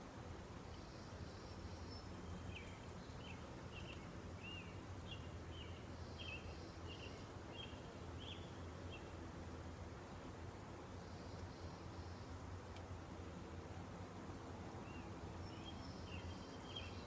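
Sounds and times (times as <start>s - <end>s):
songbird chirping: 0.6s - 9.2s, 10.8s - 12.9s, 14.7s - 17.0s.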